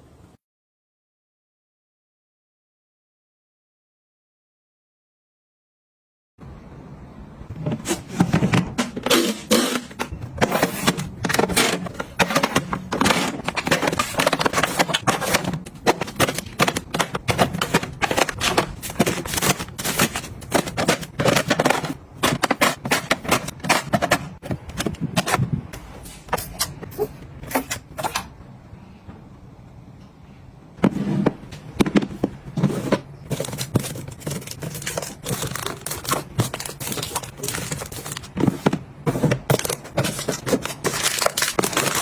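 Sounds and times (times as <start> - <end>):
household items clattering: 7.6 - 25.5, 30.8 - 42.0.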